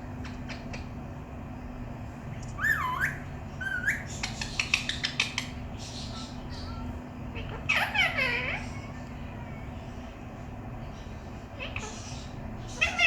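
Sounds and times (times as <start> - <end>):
parrot whistling: 2.6 - 5.5.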